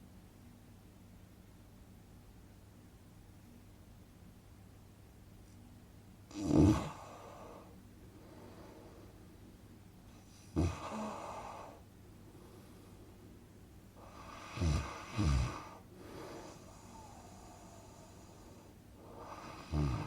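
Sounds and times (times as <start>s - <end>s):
person snoring: 6.3s - 7.7s, 10.5s - 11.8s, 14.0s - 20.0s
quiet breath: 6.8s - 20.0s.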